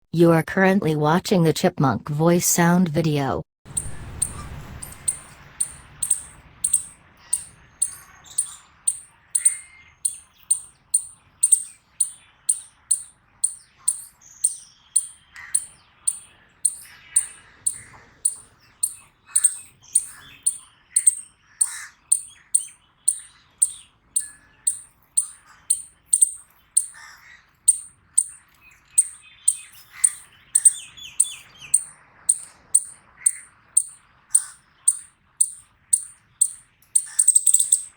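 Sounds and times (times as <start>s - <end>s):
faint lower chirps: 3.7s - 21.2s, 22.1s - 26.9s, 33.8s - 37.9s
chipmunk chip calls: 3.7s - 37.9s.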